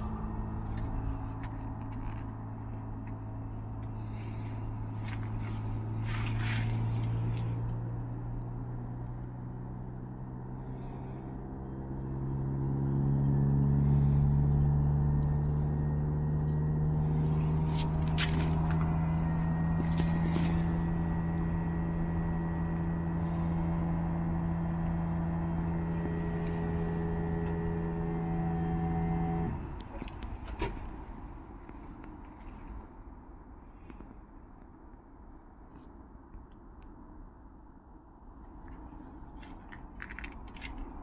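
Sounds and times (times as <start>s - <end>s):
heat pump compressor humming: 0.0s - 7.7s, 17.0s - 30.5s.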